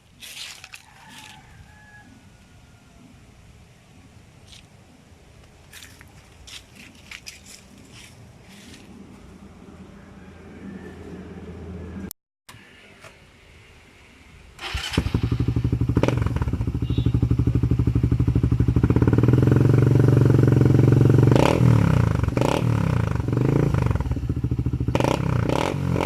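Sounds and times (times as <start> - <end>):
motorcycle engine idling: 14.6 - 25.8
engine throttle blips: 14.6 - 26.0.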